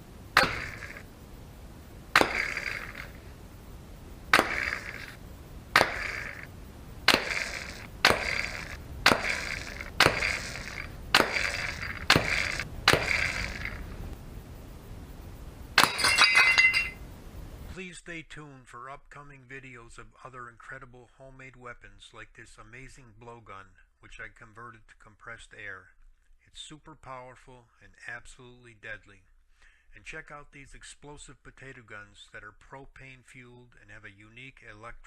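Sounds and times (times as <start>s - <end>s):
sharp gunshot cracks: 2.1s - 3.1s, 4.3s - 13.8s
ringing rattle: 15.8s - 17.0s.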